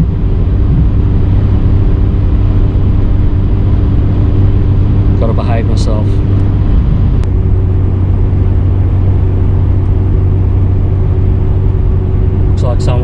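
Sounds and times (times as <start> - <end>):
car engine cruising drone: 0.0 - 13.0.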